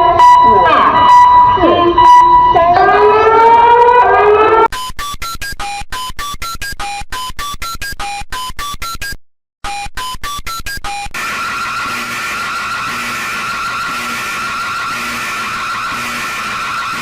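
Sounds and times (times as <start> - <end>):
rising siren-like glide: 0.0 - 4.7, 11.2 - 17.0.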